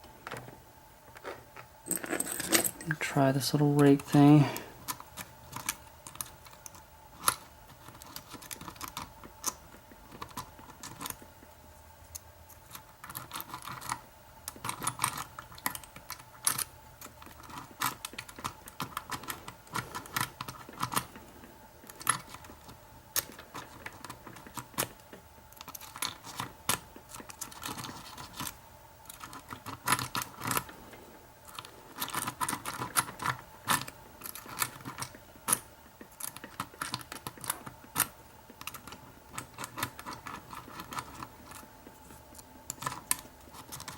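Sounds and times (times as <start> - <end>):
lock pick raking pins: 1.2 - 6.3.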